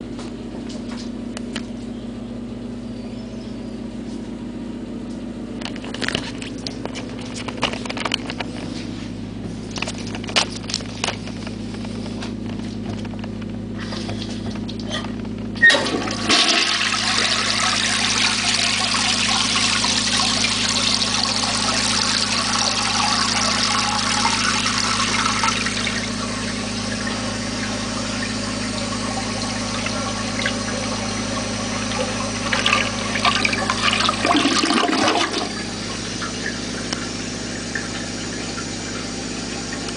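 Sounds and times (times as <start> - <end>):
low hum: 0.0 - 39.9
toilet flush rushing water: 15.6 - 39.9.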